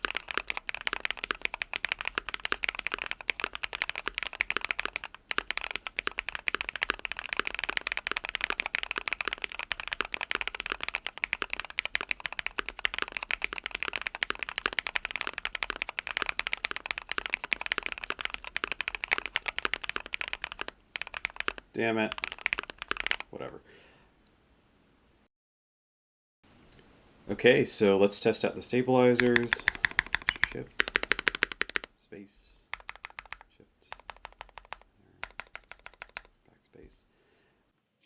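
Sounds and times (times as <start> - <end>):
fast mechanical keyboard typing: 0.0 - 23.3, 29.1 - 31.9, 32.7 - 36.4.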